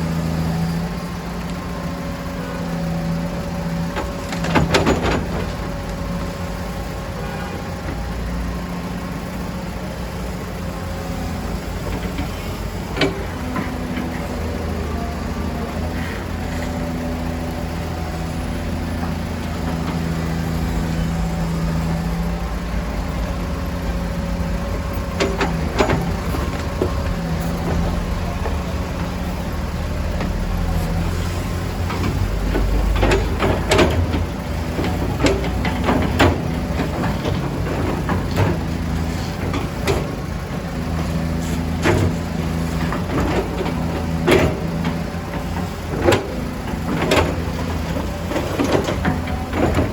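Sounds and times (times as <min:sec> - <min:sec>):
diesel engine running: 0:00.0 - 0:49.9
sharp clanks and knocks: 0:31.8 - 0:40.2.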